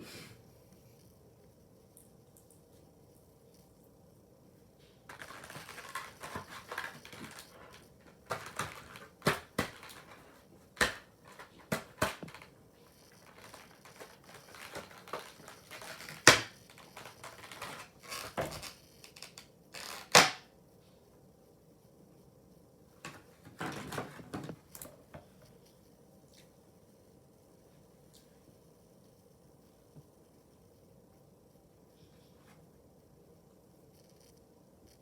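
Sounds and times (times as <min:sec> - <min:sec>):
packaging rustling: 0:05.1 - 0:20.3
packaging clicks and knocks: 0:05.1 - 0:20.4.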